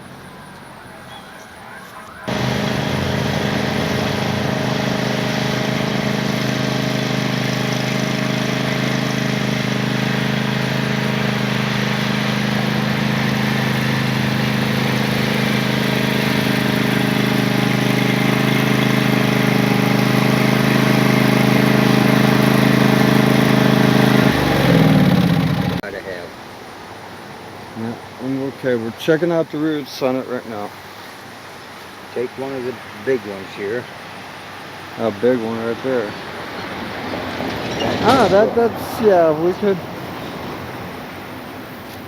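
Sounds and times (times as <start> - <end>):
small gasoline engine running: 2.3 - 25.9, 35.0 - 41.0.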